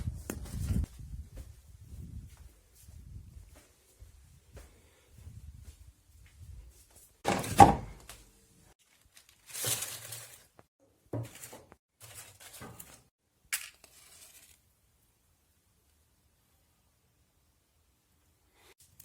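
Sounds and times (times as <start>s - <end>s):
tearing or rustling: 8.8s - 10.6s, 11.4s - 14.6s.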